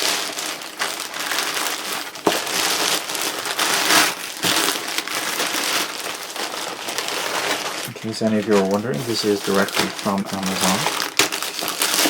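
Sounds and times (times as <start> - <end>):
plastic wrap crinkling: 0.0 - 12.0
plastic wrap snapping: 0.0 - 12.0.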